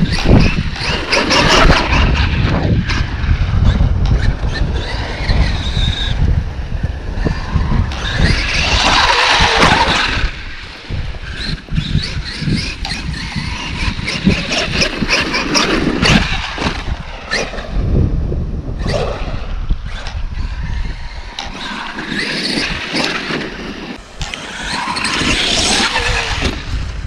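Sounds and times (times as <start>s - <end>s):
electric motor whine: 18.8s - 27.0s.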